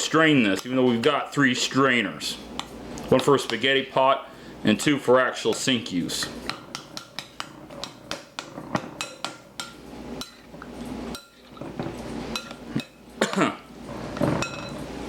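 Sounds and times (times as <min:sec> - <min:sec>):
spoon clinking against a dish: 0:09.0 - 0:10.4, 0:11.1 - 0:11.4, 0:12.3 - 0:13.0.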